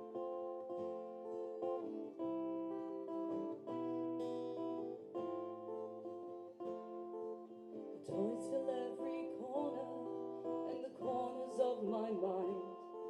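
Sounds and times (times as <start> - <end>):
acoustic guitar strumming chords: 0.0 - 13.0.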